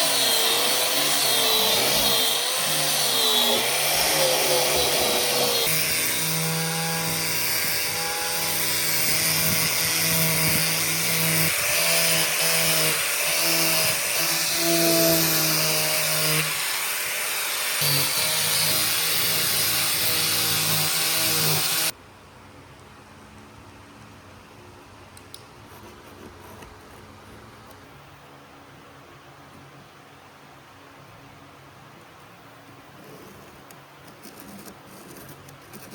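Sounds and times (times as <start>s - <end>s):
power tool working wood: 0.0s - 21.9s.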